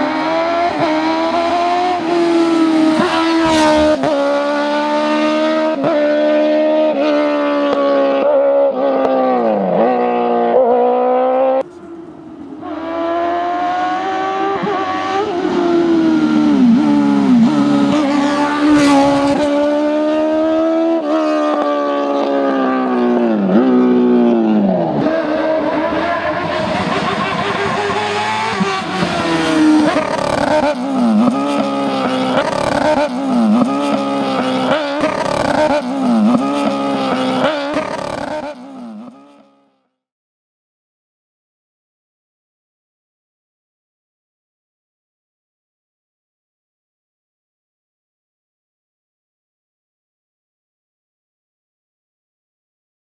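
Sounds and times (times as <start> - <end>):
race car engine accelerating: 0.0 - 39.6.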